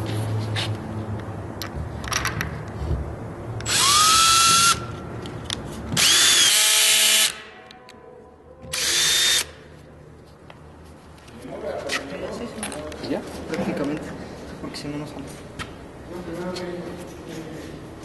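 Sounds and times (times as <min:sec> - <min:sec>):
cordless drill motor whine: 0:03.7 - 0:04.8.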